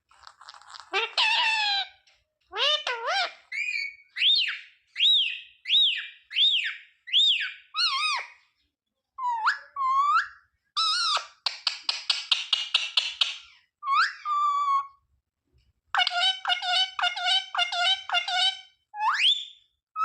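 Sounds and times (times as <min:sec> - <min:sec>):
parrot whistling: 0:03.5 - 0:08.2.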